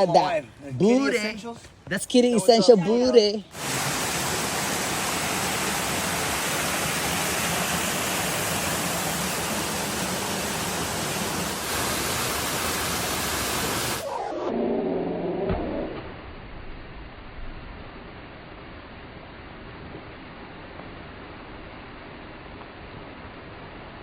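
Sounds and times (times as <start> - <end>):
waterfall roaring: 2.3 - 14.3.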